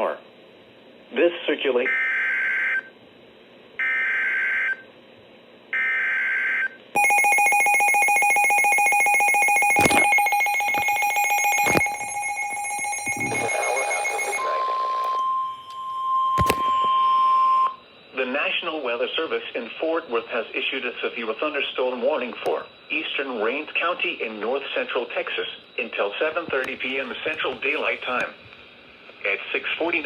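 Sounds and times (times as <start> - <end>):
steady single-pitch alarm tone: 5.8 - 18.1
rapidly pulsing alarm tone: 7.0 - 17.8.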